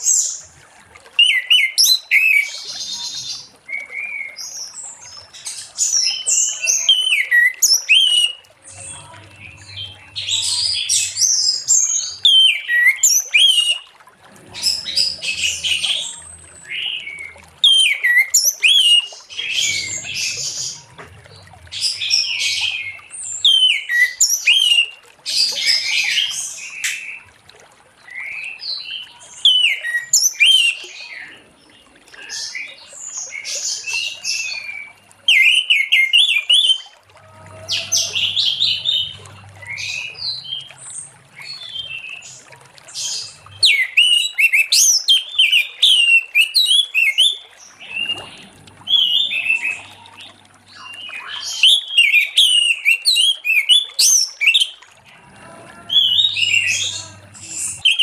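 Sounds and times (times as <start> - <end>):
thrush singing whistled trills: 1.2 - 4.4, 6.1 - 8.5, 9.4 - 13.8, 14.6 - 20.9, 21.8 - 27.2, 29.4 - 31.0, 43.0 - 54.8, 56.0 - 58.0.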